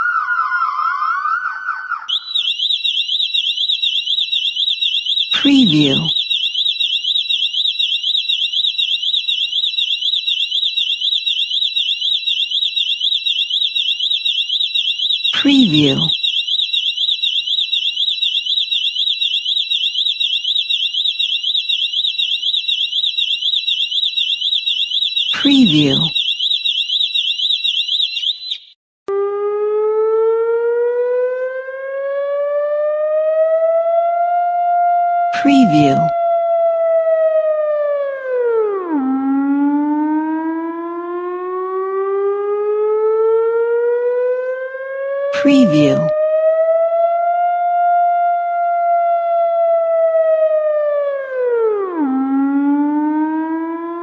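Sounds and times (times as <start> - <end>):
electronic alarm siren warbling: 0.0 - 29.3, 35.4 - 36.1, 45.4 - 46.2.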